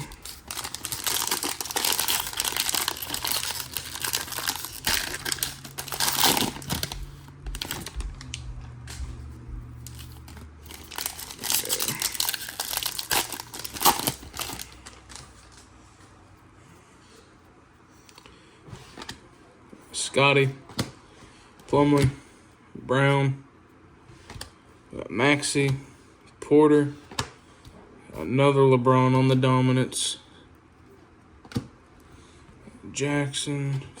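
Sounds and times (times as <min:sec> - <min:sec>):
wrapper tearing and crinkling: 0:00.0 - 0:08.4, 0:09.8 - 0:15.2.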